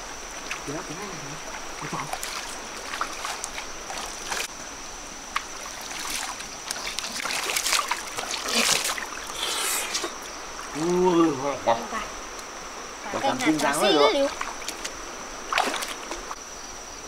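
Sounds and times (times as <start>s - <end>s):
shallow water splashing: 0.3s - 4.5s, 5.2s - 11.4s, 13.2s - 16.4s.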